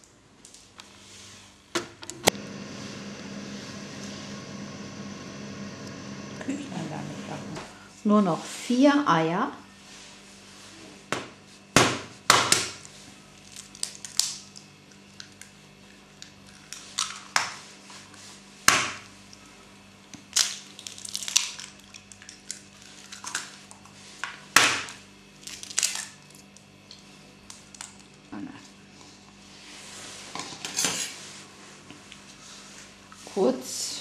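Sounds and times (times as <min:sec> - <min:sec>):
eggshells cracking: 0:20.3 - 0:23.4.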